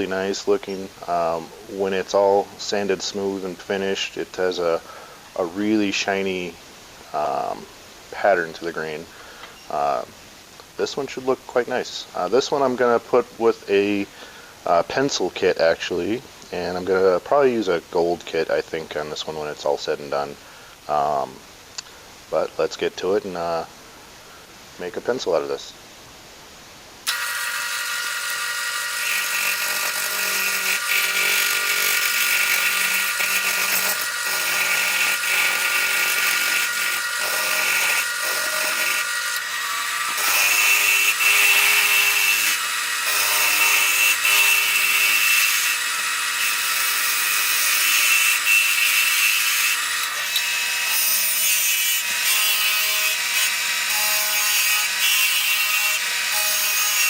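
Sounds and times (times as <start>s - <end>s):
lathe motor whine: 27.1s - 46.4s
turning tool shaving wood: 27.1s - 57.0s.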